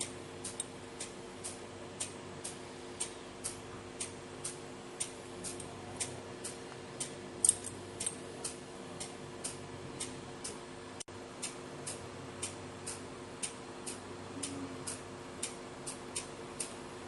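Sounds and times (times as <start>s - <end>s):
faint steady hum: 0.0s - 17.0s
steady ticking: 0.0s - 17.0s.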